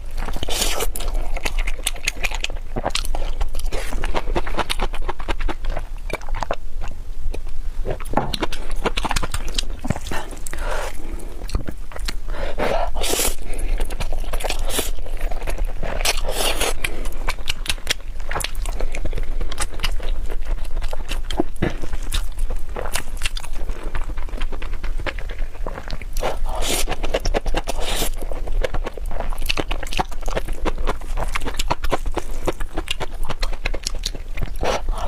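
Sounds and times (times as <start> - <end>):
chewing shellfish with clicks: 0.1 - 12.2, 12.9 - 35.0.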